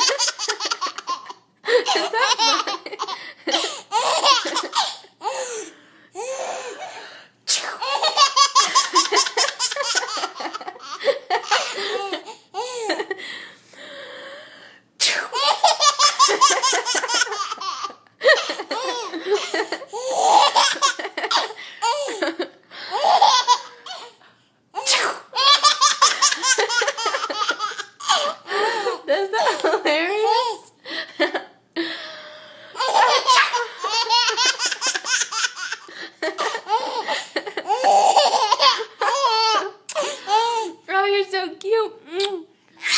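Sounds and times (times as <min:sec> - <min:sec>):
baby laughing: 0:00.0 - 0:07.0, 0:07.8 - 0:13.1, 0:15.3 - 0:24.2, 0:24.8 - 0:30.7, 0:32.8 - 0:40.8
person sneezing: 0:07.5 - 0:07.8, 0:15.0 - 0:15.4, 0:24.8 - 0:25.3.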